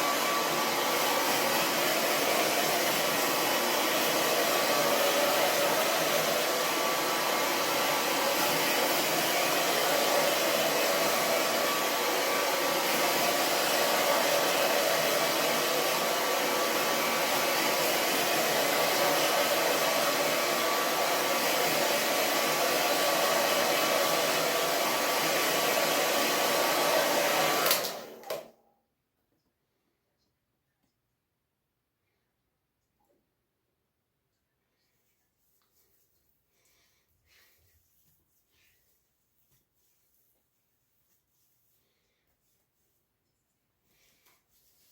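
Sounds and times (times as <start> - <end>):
hair dryer blowing: 0.0 - 28.6.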